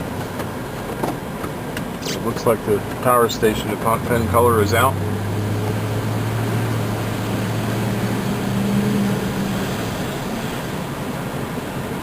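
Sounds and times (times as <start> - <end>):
car engine drone: 0.0 - 12.0
tyre and road noise: 0.0 - 12.0.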